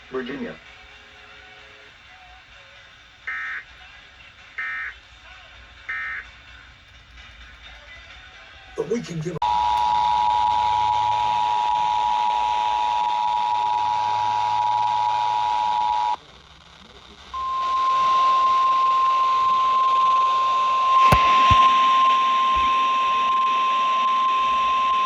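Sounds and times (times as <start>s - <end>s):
sharp click: 21.1s - 21.7s
radio static: 21.1s - 21.8s.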